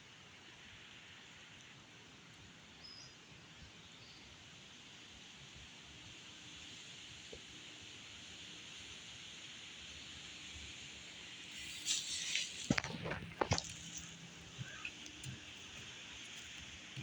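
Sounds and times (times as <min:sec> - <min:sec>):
faint outdoor hiss: 0:00.0 - 0:17.0
short rustle: 0:11.5 - 0:17.0.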